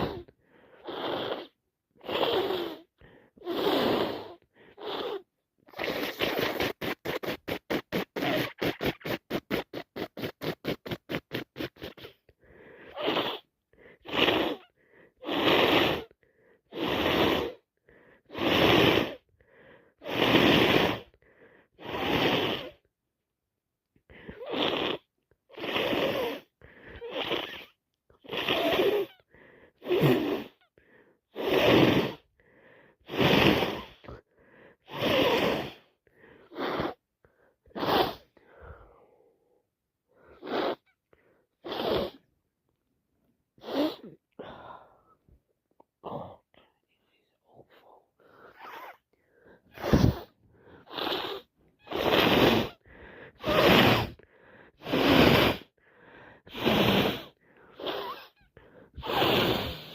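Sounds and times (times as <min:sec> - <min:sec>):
person sneezing congested: 0:05.7 - 0:12.2, 0:49.6 - 0:54.2.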